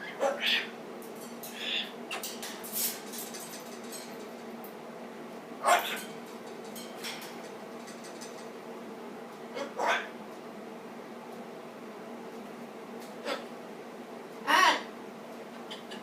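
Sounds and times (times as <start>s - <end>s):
cockatoo soft noises: 0.0s - 3.9s, 5.6s - 6.6s, 13.1s - 13.6s.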